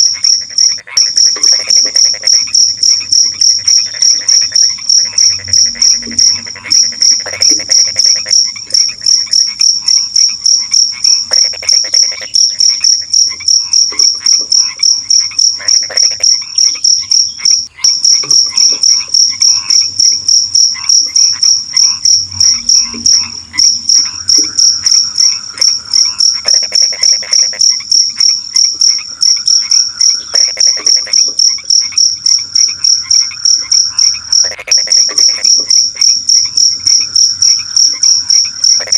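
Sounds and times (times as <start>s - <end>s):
crickets chirping: 0.0s - 38.9s
frogs croaking: 0.0s - 38.9s.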